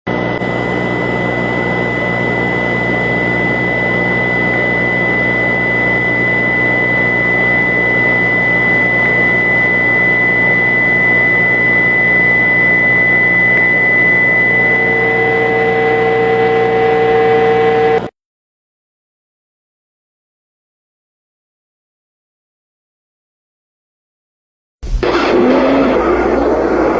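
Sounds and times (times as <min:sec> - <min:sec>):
high whine: 0:24.8 - 0:26.9
loud rushing drone: 0:24.8 - 0:26.9
steady lower tones: 0:24.8 - 0:26.9.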